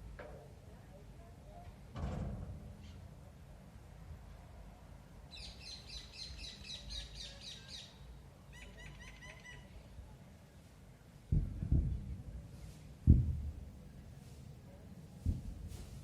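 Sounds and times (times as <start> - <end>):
songbird chirping: 5.3 - 10.0.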